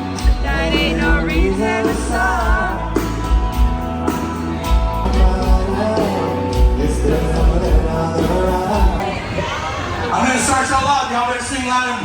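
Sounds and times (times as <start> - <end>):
man singing: 0.0 - 9.0
steady drum beat: 0.0 - 9.0
guitar: 0.0 - 11.6.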